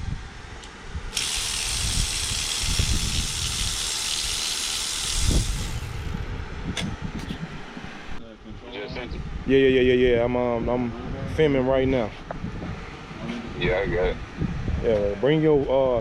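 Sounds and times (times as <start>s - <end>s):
compressed gas hissing: 1.1s - 6.2s.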